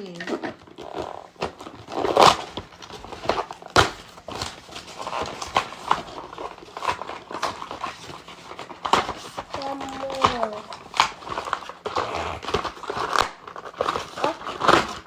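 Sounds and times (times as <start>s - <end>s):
plastic toys clicking and knocking: 0.0s - 15.0s.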